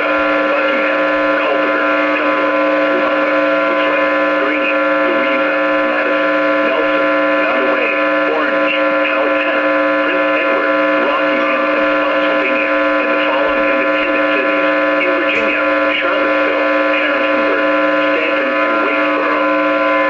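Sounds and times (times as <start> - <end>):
broadcast voice reading: 0.0 - 20.0
electrical whine of radio static: 0.0 - 20.0.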